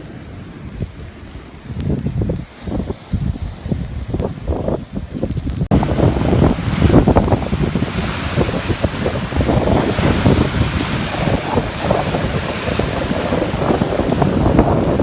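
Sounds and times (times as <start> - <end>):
waves washing: 0.0 - 15.0
wind buffeting microphone: 0.0 - 15.0
surf hiss: 5.0 - 15.0.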